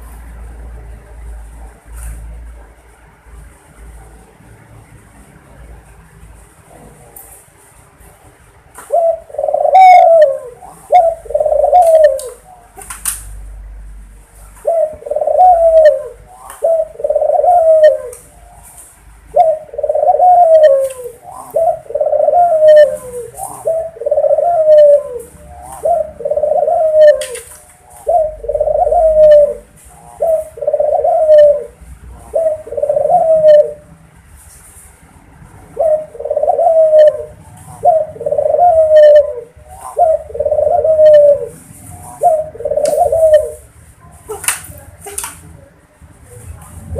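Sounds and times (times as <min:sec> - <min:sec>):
dove cooing: 0:08.8 - 0:12.9, 0:14.4 - 0:34.0, 0:35.6 - 0:45.7.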